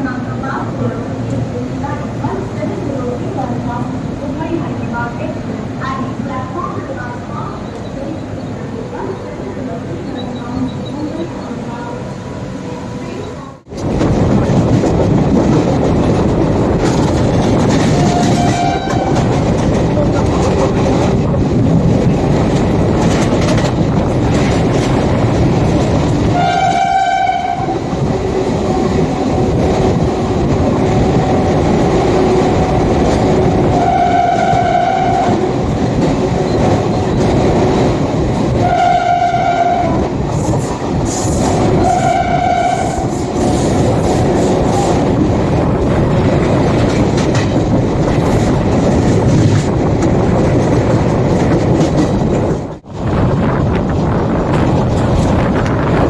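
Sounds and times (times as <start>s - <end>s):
train rumbling on track: 0.0s - 56.0s
locomotive horn blasts: 17.9s - 19.3s, 26.4s - 27.9s, 33.7s - 35.5s, 38.6s - 40.1s, 41.8s - 43.3s.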